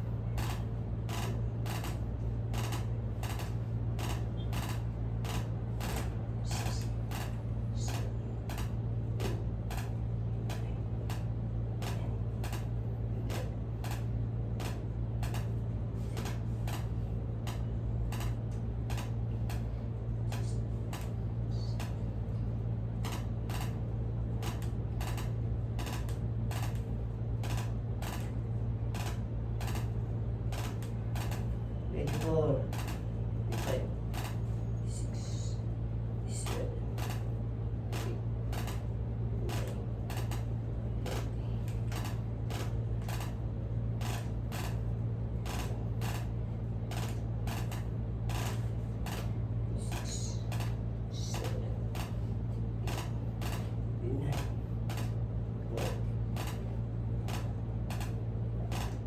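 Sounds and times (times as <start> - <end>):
steady low hum: 0.0 - 59.0
sharp clicks: 17.5 - 19.6.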